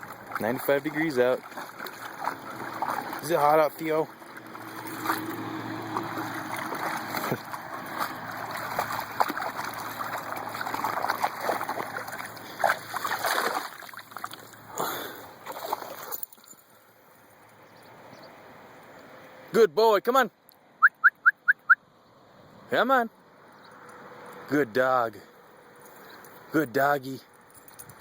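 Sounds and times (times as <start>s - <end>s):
dog splashing in water: 0.0s - 16.5s.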